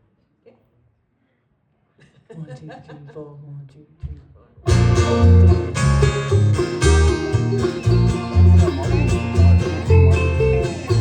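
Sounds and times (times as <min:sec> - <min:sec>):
banjo picking: 0:04.6 - 0:11.0
guitar picking: 0:04.7 - 0:11.0
walking bass line: 0:04.7 - 0:11.0.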